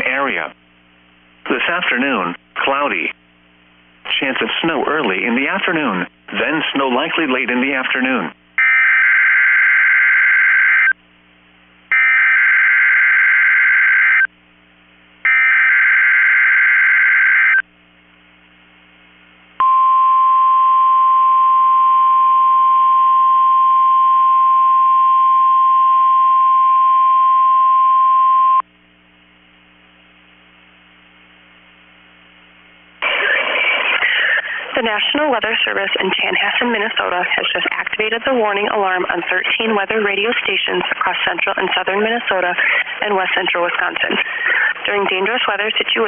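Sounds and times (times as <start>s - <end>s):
announcer speaking: 0.0s - 0.6s, 1.5s - 3.2s, 4.1s - 8.4s, 44.8s - 46.0s
faint radio hiss: 0.0s - 8.6s, 17.7s - 19.6s, 28.7s - 46.0s
single-tone warning alarm: 8.6s - 10.9s, 11.9s - 14.3s, 15.3s - 17.6s.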